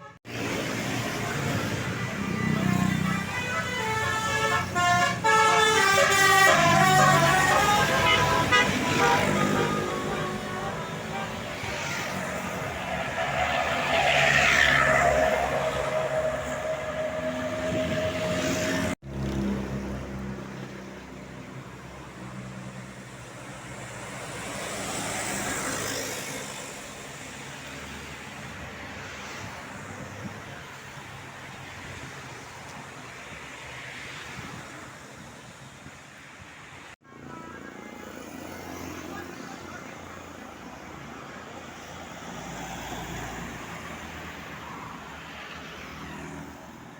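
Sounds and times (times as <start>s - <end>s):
buses passing: 0.0s - 46.9s
bus horn: 1.0s - 19.0s.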